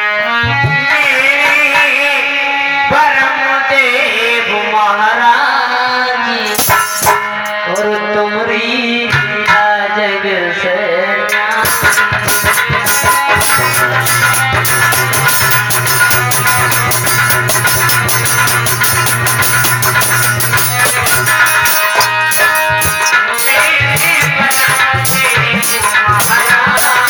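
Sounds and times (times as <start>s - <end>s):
fast drum beat: 11.5s - 27.0s.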